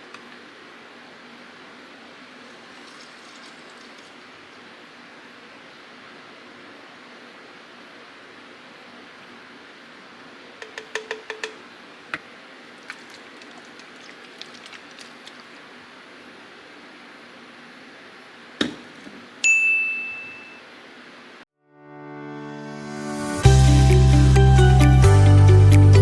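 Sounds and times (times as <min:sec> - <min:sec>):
steady hiss: 0:00.0 - 0:19.5
bright ding: 0:19.4 - 0:20.7.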